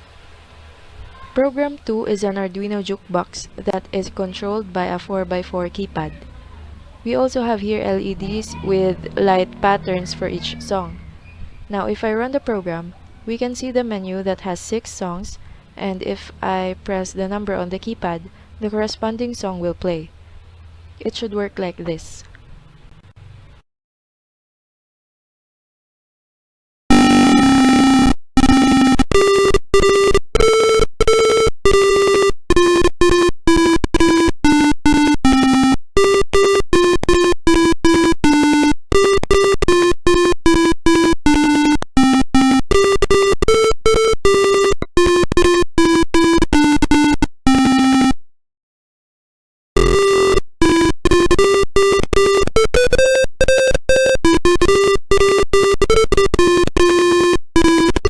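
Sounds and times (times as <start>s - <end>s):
buzzer playing electronic beeps: 2.8s - 6.2s, 7.1s - 19.4s, 26.9s - 48.2s, 49.8s - 58.0s.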